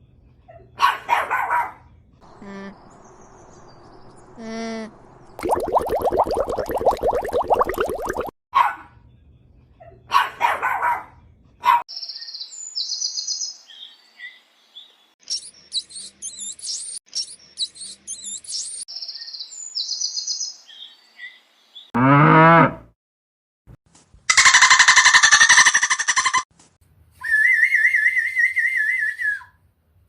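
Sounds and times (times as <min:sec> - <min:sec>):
small birds chirping: 0:02.2 - 0:07.1, 0:11.9 - 0:21.9
cow mooing: 0:22.0 - 0:22.8.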